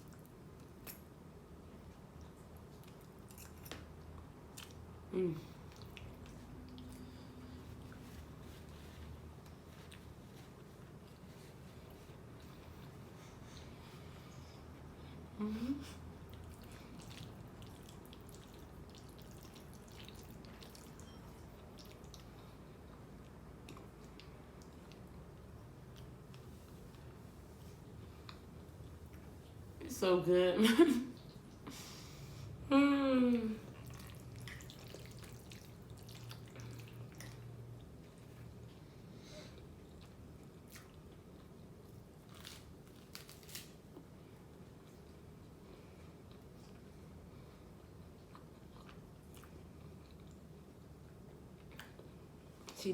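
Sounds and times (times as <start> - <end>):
chewing and wet mouth sounds: 0.0 - 14.9, 16.0 - 29.8, 33.6 - 52.9
wet chewing and mouth clicks: 5.6 - 7.2, 16.2 - 27.1, 33.7 - 38.8.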